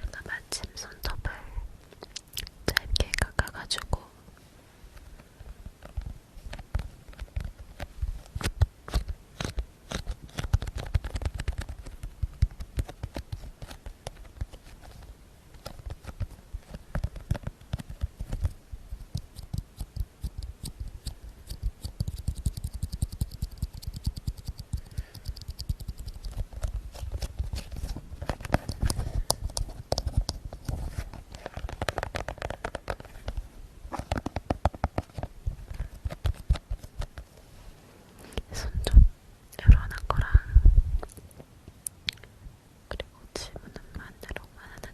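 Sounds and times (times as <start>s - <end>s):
rapid sharp tapping: 15.6s - 26.7s
low rumble: 40.2s - 41.1s.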